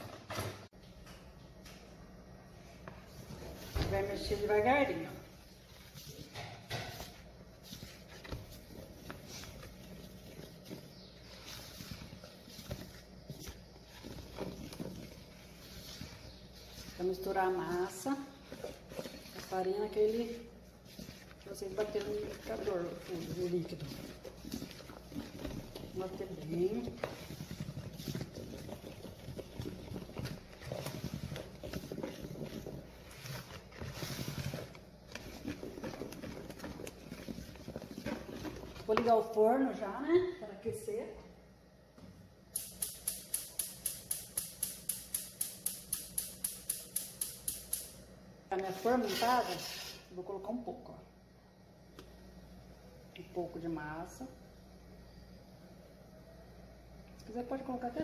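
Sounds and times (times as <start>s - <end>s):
utensil scraping batter in bowl: 3.4s - 39.4s, 48.5s - 50.2s.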